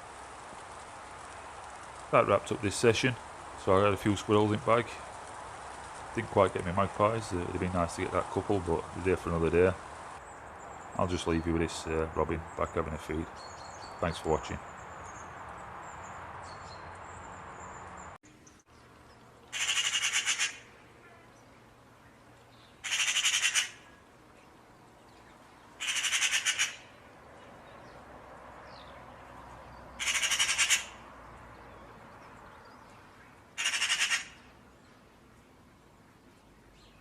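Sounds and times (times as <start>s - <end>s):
steady hiss: 0.0s - 16.4s
bird rattling call: 19.5s - 20.7s, 22.8s - 23.9s, 25.8s - 27.0s, 29.9s - 31.0s, 33.6s - 34.5s.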